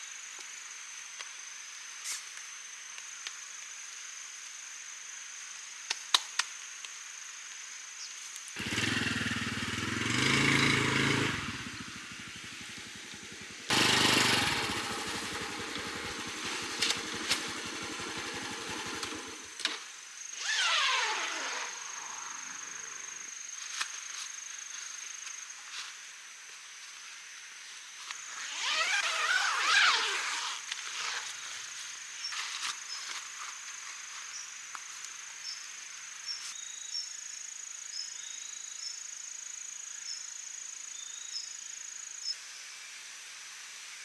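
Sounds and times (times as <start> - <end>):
motorcycle passing by: 8.6 - 19.6
small motorcycle engine starting: 8.6 - 23.1, 28.3 - 31.1.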